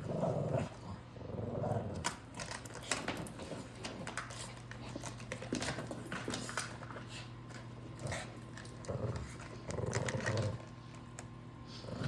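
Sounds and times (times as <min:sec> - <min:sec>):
puppy growling: 0:00.0 - 0:02.2, 0:08.0 - 0:10.7, 0:11.7 - 0:12.0.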